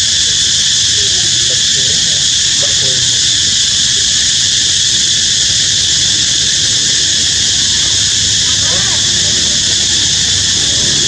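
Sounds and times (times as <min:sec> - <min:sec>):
insect chorus hissing: 0:00.0 - 0:11.0
short squeaky calls: 0:06.0 - 0:11.0.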